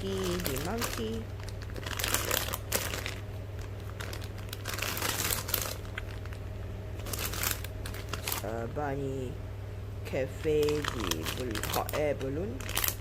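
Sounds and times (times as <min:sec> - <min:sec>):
plastic packaging crinkling: 0:00.0 - 0:08.6, 0:10.3 - 0:13.0
steady low hum: 0:00.0 - 0:13.0.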